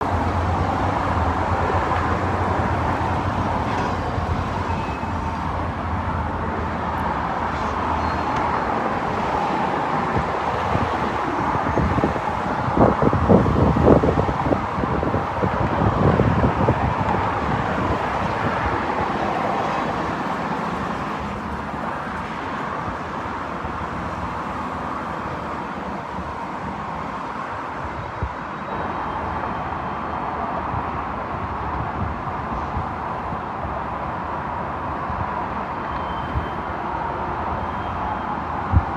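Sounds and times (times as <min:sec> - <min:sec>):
train wheels rumbling on rail: 0:00.0 - 0:24.3.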